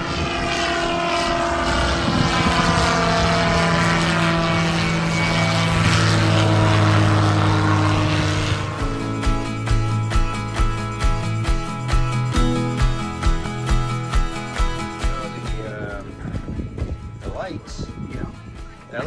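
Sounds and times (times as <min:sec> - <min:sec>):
propeller aircraft engine running: 0:00.0 - 0:19.0
music: 0:08.8 - 0:19.0.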